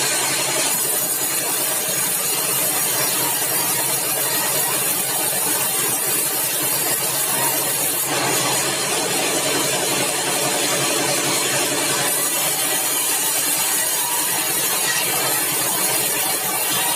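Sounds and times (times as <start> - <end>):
sawmill machinery running: 0.0 - 16.9.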